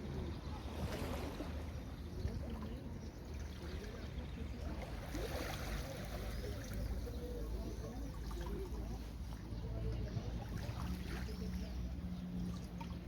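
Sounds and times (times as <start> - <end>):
waves washing onto beach: 3.2 - 9.6.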